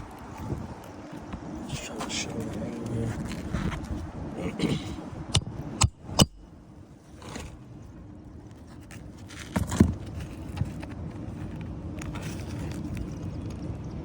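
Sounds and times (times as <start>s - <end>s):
steady low hum: 0.0s - 14.0s
light scraping: 1.7s - 4.1s.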